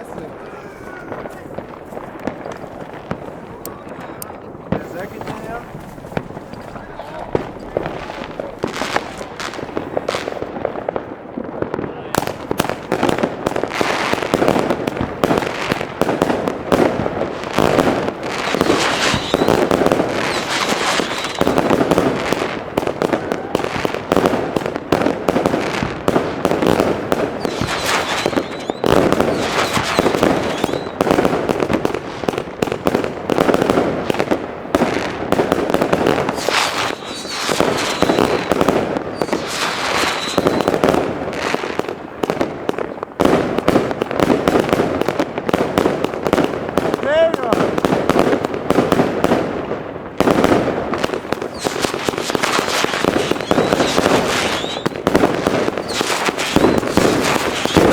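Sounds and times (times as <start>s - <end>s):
firework shots and crackling: 0.0s - 57.9s
firework high whistles: 18.4s - 21.8s, 27.4s - 31.2s, 36.2s - 40.9s, 51.4s - 55.0s, 55.7s - 57.9s.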